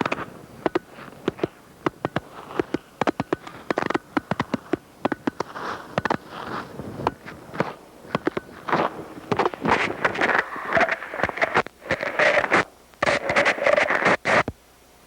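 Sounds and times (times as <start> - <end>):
wind noise on microphone: 6.0 - 14.4.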